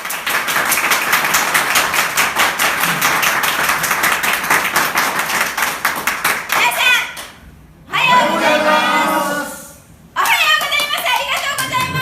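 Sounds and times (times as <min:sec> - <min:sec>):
audience applauding: 0:00.0 - 0:06.6, 0:10.6 - 0:12.0.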